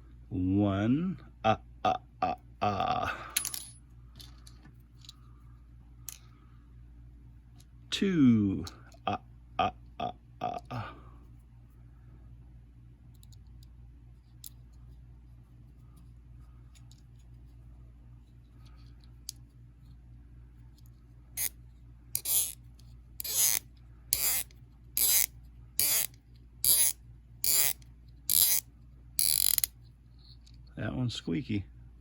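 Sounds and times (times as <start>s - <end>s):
low steady hum: 0.0s - 32.0s
toy car wheels squeaking: 22.2s - 22.6s, 23.2s - 23.6s, 24.2s - 28.6s, 29.2s - 29.7s.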